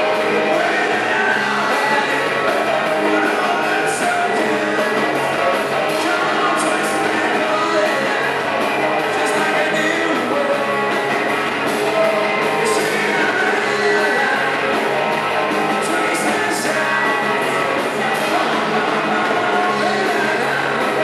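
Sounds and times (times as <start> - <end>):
rock band playing: 0.0 - 21.0.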